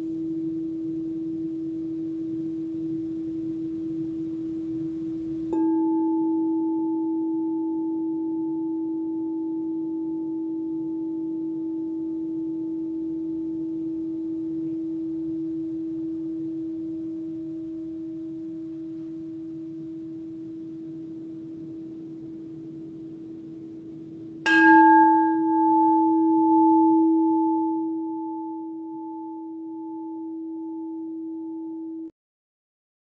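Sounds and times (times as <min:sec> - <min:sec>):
singing bowl ringing: 0:00.0 - 0:32.1.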